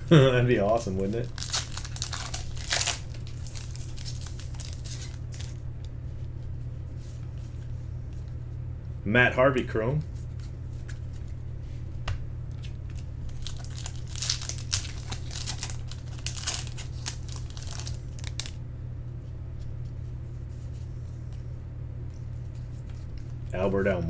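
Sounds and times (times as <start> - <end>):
steady low hum: 0.0 - 24.0
wrapper torn and crinkling: 1.2 - 5.6, 12.9 - 18.6.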